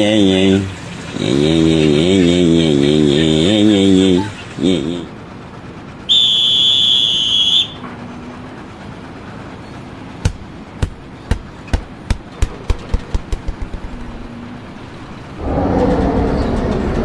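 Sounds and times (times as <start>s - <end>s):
sharp knocks: 10.2s - 14.2s.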